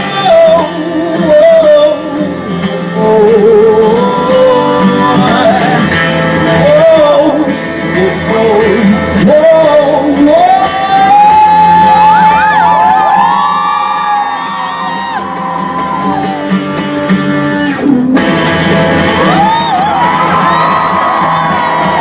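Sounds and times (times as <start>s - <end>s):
man singing wordless melody: 0.0s - 12.2s
guitar-led band playing: 0.0s - 22.0s
audience shouting: 11.4s - 16.5s, 19.1s - 22.0s.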